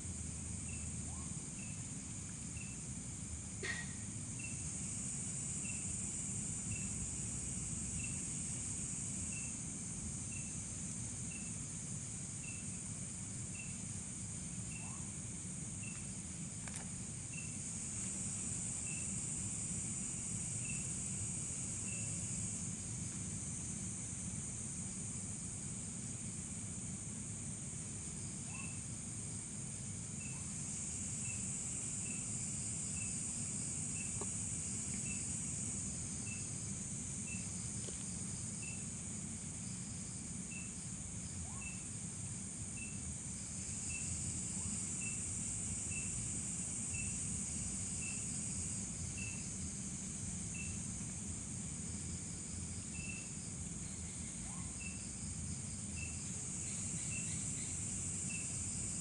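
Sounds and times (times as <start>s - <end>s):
insect chirping: 0.0s - 59.0s
crickets shrilling: 15.7s - 22.9s, 30.0s - 59.0s.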